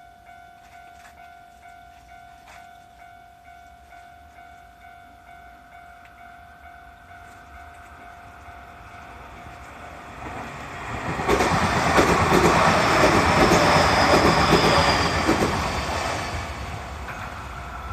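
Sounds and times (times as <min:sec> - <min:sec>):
crossing warning bell: 0:00.0 - 0:17.9
train wheels rumbling with clacks: 0:07.2 - 0:17.9
faint high squeal: 0:13.6 - 0:17.9.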